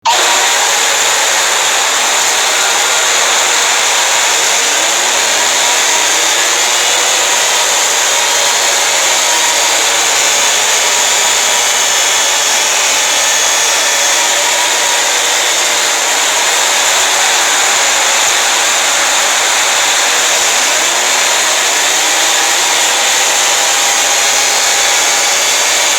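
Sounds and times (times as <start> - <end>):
distorted harsh alarm noise: 0.0 - 25.9.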